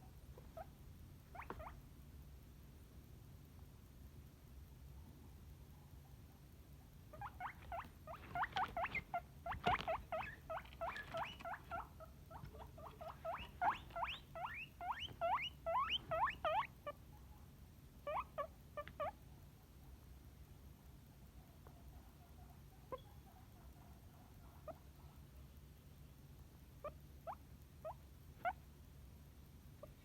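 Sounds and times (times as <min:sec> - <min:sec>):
guinea pig squealing: 0:00.3 - 0:01.8, 0:07.1 - 0:17.0, 0:18.0 - 0:19.2, 0:22.9 - 0:23.4, 0:26.8 - 0:28.6.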